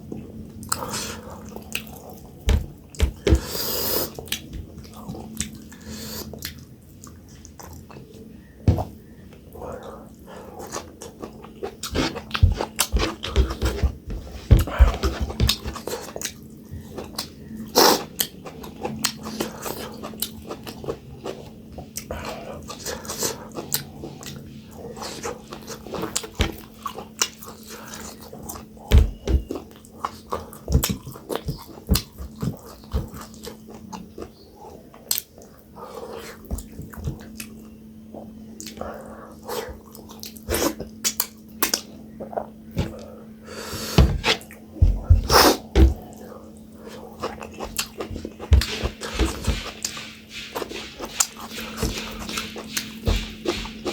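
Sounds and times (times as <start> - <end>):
steady low hum: 0.0 - 53.9
chewing and mouth smacks: 0.6 - 2.3, 15.5 - 24.4, 29.6 - 35.6, 46.8 - 53.9.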